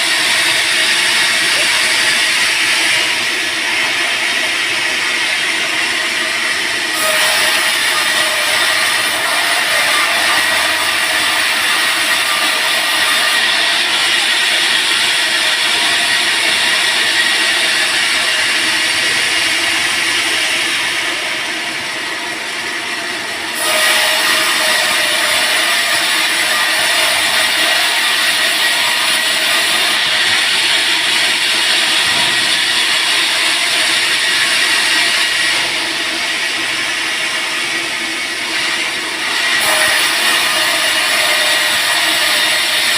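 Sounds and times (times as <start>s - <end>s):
band sawmill humming: 0.0s - 42.9s.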